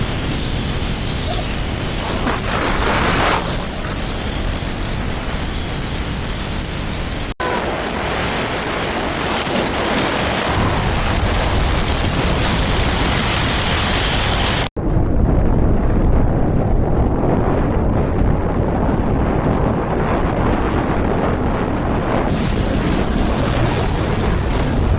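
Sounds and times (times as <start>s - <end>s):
storm wind buffeting microphone: 0.0s - 24.9s.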